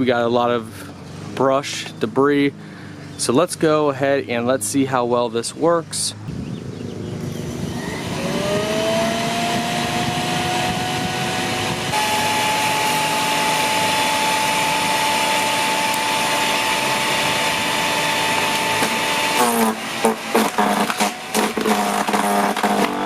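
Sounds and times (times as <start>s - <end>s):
electric wood chipper motor whine: 7.1s - 23.0s.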